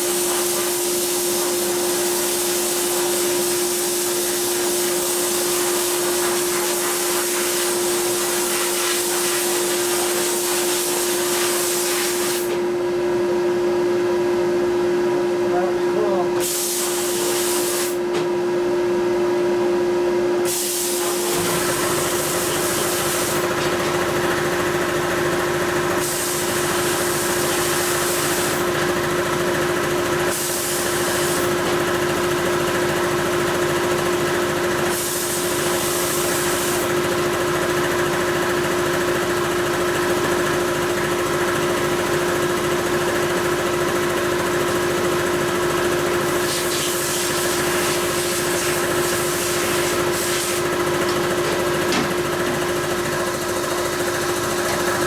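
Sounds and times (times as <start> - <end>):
air nozzle hissing: 0.0 - 12.6, 16.4 - 18.0, 20.5 - 23.4, 30.3 - 31.6, 46.4 - 50.7.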